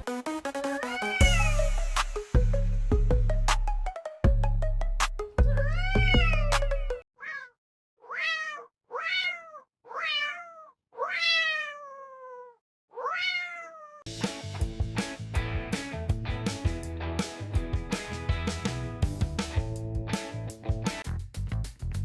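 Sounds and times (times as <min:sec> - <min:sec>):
music with heavy bass: 0:00.0 - 0:07.0, 0:14.1 - 0:17.0
cat meowing: 0:07.2 - 0:14.0.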